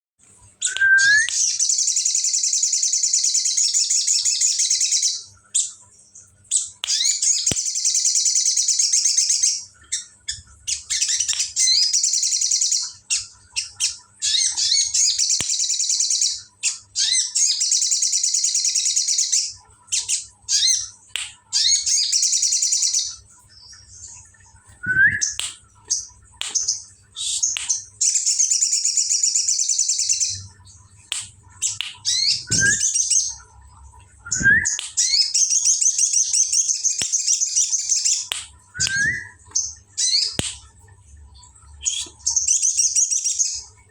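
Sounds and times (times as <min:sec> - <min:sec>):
bird singing rattling trills: 0:31.6 - 0:33.4.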